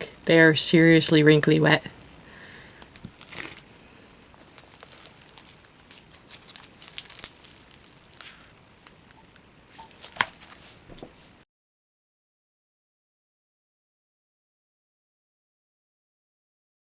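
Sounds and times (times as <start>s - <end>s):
crinkling handling noises: 2.6s - 11.4s.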